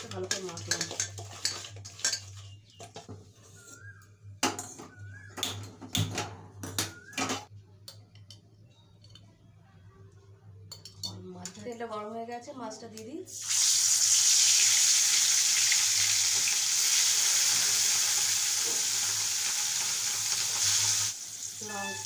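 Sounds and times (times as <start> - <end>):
metal utensils and dishes clinking: 0.0 - 3.1.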